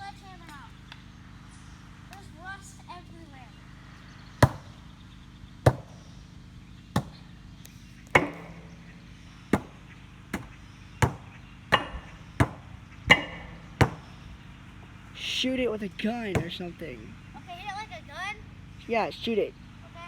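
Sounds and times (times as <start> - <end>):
sledgehammer striking sheet steel: 5.7 - 6.0, 7.0 - 7.2, 8.2 - 14.4.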